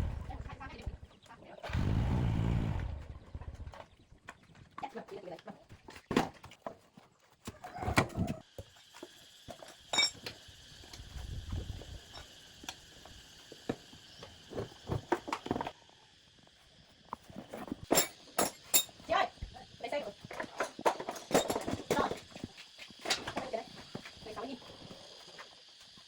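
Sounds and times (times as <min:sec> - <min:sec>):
short low rumble: 0:00.0 - 0:00.6
metallic clinks and knocks: 0:17.9 - 0:19.0.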